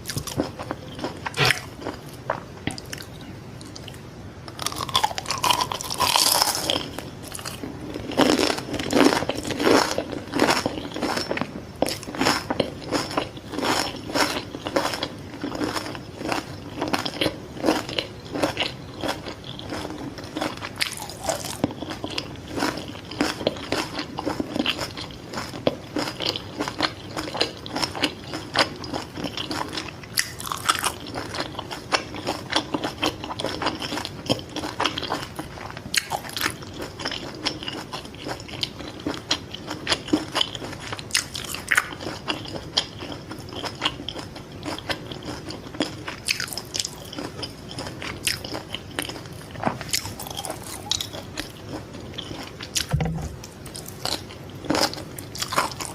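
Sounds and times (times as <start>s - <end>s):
crunchy biting and chewing: 0.0s - 55.9s.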